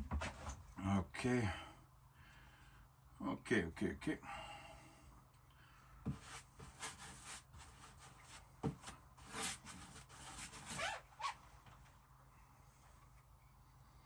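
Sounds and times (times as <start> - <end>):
paintbrush scraping a surface: 6.1 - 8.6.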